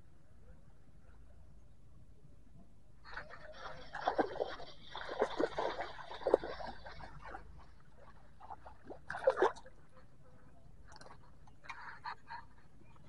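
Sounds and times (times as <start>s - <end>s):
water splashing and sloshing: 3.1s - 13.0s.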